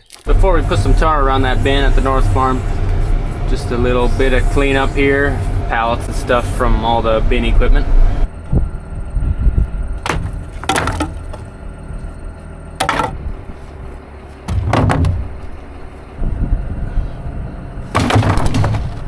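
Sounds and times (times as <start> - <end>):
low engine rumble: 0.0 - 19.0
wooden and metal knocks and clatters: 10.0 - 11.5, 12.8 - 13.2, 14.5 - 15.3, 17.9 - 19.0.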